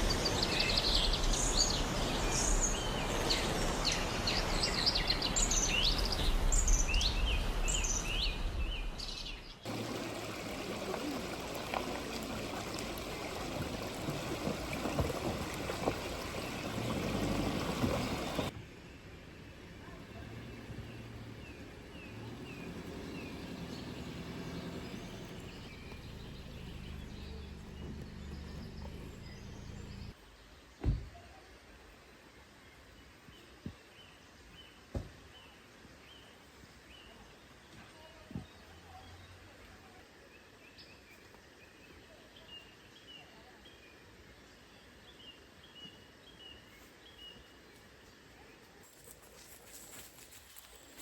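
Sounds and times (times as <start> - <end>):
bird chirping: 0.0 - 30.1.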